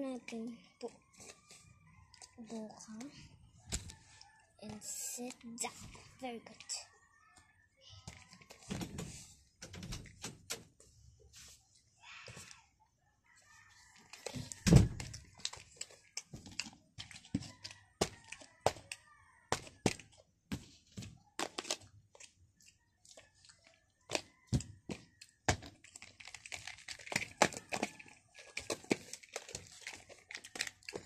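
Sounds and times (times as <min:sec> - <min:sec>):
plastic packaging crinkling: 0:14.2 - 0:18.4, 0:25.5 - 0:31.0.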